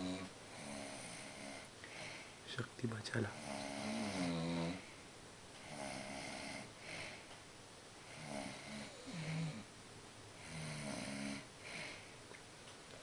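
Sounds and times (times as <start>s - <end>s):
man snoring: 0.0s - 2.2s, 3.3s - 4.9s, 5.6s - 7.2s, 8.1s - 9.7s, 10.4s - 12.0s
breathing noise: 0.5s - 2.4s.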